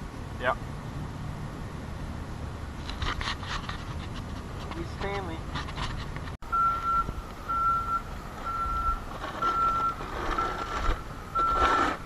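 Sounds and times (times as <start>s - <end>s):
vehicle back-up alarm beeping: 6.4s - 12.0s.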